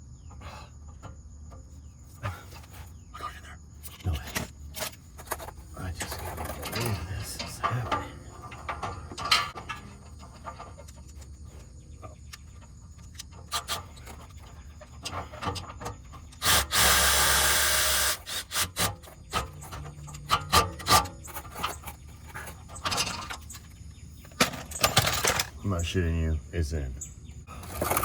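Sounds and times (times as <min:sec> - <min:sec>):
tools scraping metal parts: 0:03.8 - 0:25.6.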